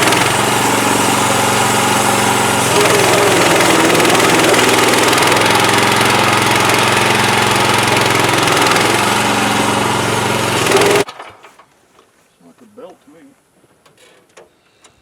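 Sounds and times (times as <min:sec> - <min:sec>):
sawmill gas engine running: 0:00.0 - 0:11.1.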